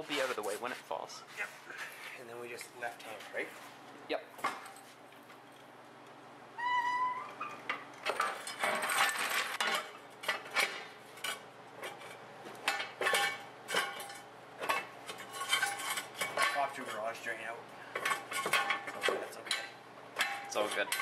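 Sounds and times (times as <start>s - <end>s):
short rising squeak: 6.6s - 7.6s
metal parts clanking: 8.0s - 17.1s, 18.0s - 21.0s.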